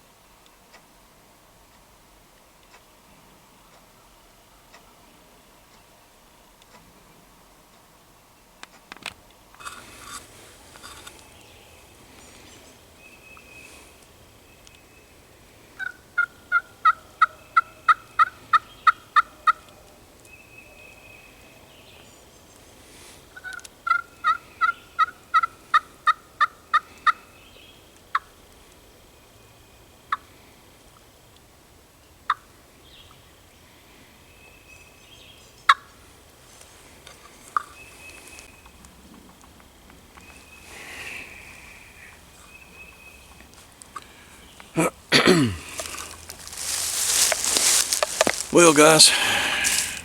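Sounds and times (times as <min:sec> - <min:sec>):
sharp turkey clucks: 0:15.7 - 0:20.3, 0:23.3 - 0:27.4, 0:28.1 - 0:28.4, 0:30.1 - 0:30.3, 0:32.2 - 0:32.6, 0:35.7 - 0:36.0, 0:37.1 - 0:39.5
turkey yelps: 0:15.8 - 0:19.9, 0:23.3 - 0:27.3.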